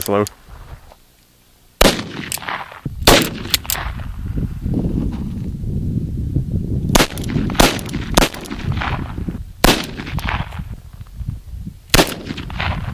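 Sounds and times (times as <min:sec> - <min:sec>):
blank revolver shots echoing: 0:01.8 - 0:04.0, 0:06.9 - 0:09.0, 0:09.6 - 0:10.5, 0:11.9 - 0:12.8.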